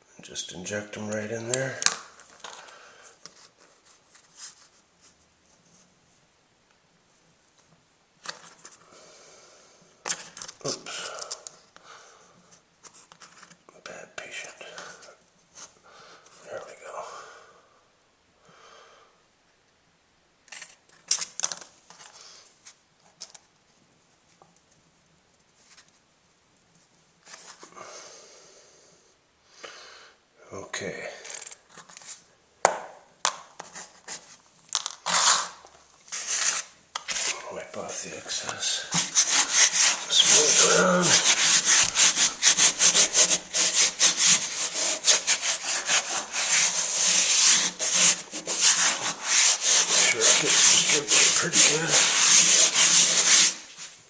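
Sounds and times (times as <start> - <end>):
rubbing on vinyl floor: 35.0 - 54.0.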